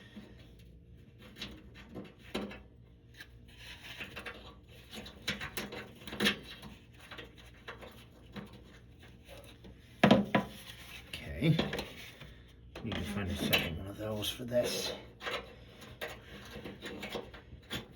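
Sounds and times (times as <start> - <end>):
dehumidifier humming: 7.8 - 17.9.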